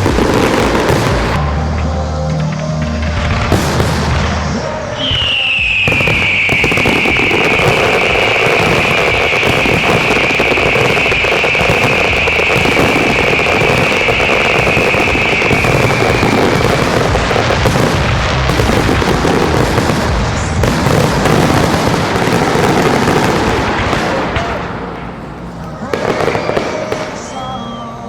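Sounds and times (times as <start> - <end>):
high firework whistle: 0.0 - 25.0, 25.8 - 28.0
fireworks bangs and crackling: 0.0 - 28.0.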